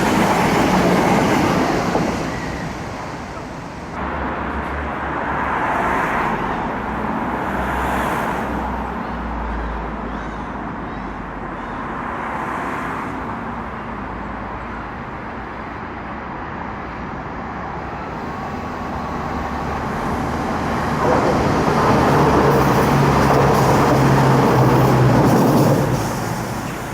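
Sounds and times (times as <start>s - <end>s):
rumble of passing traffic: 0.0s - 26.9s
train low drone: 17.0s - 26.9s.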